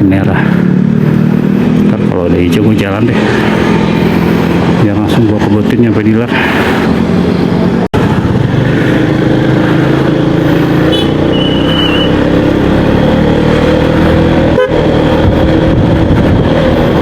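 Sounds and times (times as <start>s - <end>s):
scooter engine accelerating: 0.0s - 4.8s, 6.4s - 17.0s
short vehicle horn beep: 10.9s - 12.1s.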